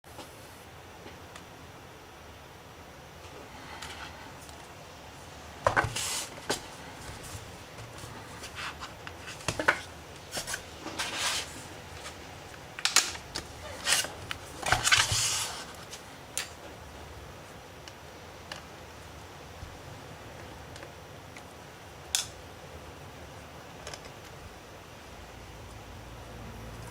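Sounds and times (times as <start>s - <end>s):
plastic casing scraping: 12.8s - 16.0s.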